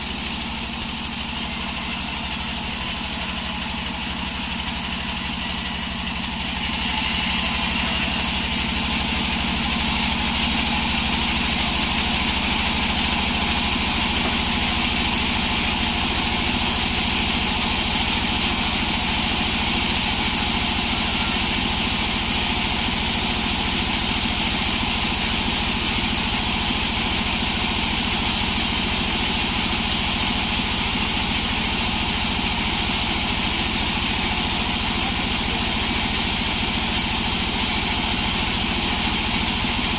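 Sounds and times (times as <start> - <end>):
saw whining: 0.0 - 39.9
sawmill engine drone: 0.0 - 39.9.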